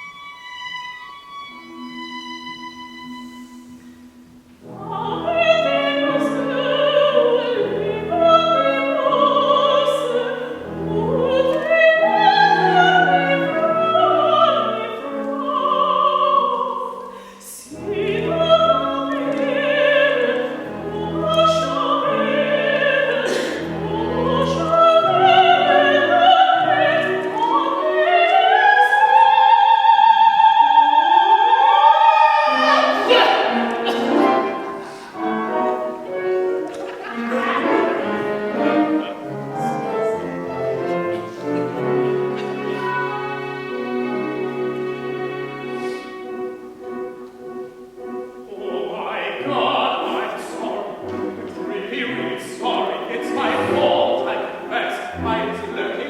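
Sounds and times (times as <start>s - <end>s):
operatic singing: 4.6s - 56.0s
instrumental accompaniment: 17.7s - 56.0s.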